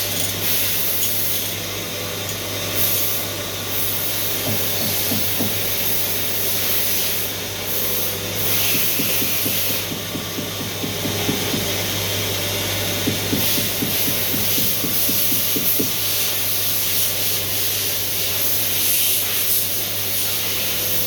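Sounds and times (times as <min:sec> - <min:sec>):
machine hiss: 0:02.7 - 0:12.0, 0:13.0 - 0:21.0
machine low hum: 0:07.4 - 0:15.7.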